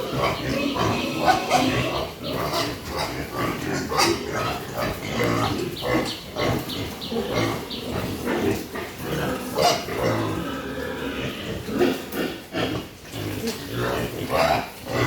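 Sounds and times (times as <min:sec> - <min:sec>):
pigs grunting: 0:00.0 - 0:15.0
pigs squealing: 0:00.0 - 0:15.0.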